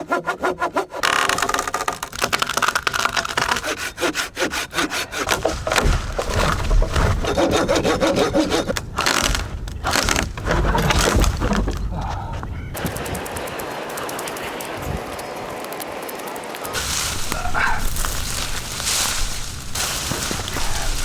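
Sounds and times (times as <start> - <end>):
hand saw cutting wood: 0.0 - 11.8, 16.8 - 21.0.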